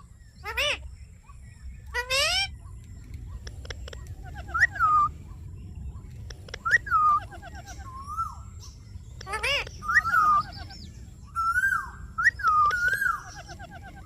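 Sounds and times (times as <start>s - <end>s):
parrot calling: 0.4s - 0.9s, 1.9s - 2.6s, 4.0s - 5.1s, 6.6s - 8.4s, 9.2s - 14.0s.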